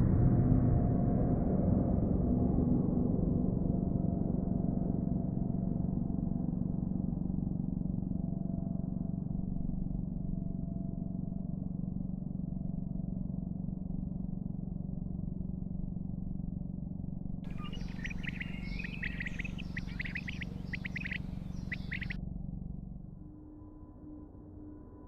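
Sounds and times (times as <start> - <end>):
birds chirping: 17.5 - 22.2
steady low hum: 17.5 - 23.1.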